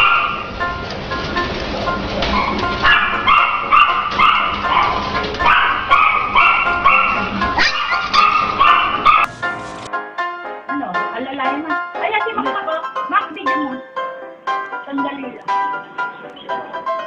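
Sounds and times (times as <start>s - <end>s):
dog yapping: 0.0s - 0.5s, 2.3s - 9.3s
background music: 0.0s - 17.0s.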